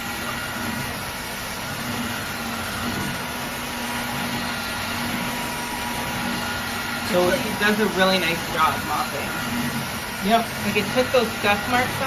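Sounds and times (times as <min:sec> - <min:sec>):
vacuum mop humming: 0:00.0 - 0:12.0.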